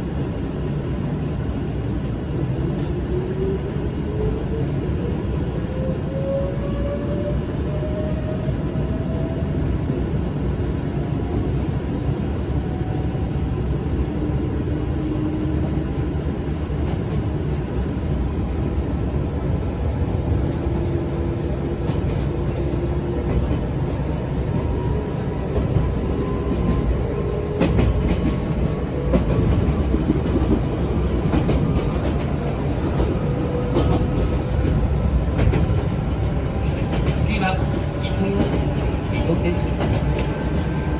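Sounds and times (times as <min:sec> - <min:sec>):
train wheels rumbling on rail: 0:00.0 - 0:40.9
rail joint clicks: 0:02.6 - 0:03.1, 0:21.2 - 0:40.9.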